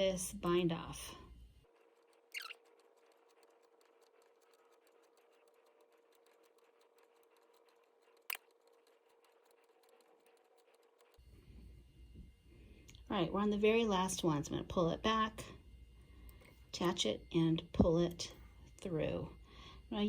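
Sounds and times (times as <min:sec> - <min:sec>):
faint steady hum: 0:00.0 - 0:20.0
short falling squeak: 0:02.3 - 0:02.6.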